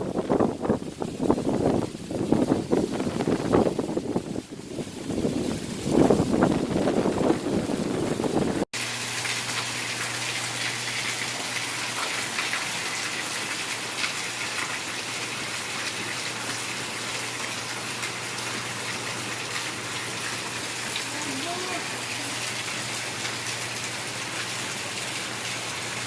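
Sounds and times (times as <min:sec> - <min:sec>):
wind buffeting microphone: 0:00.0 - 0:08.7
heavy rain pouring: 0:00.0 - 0:26.0.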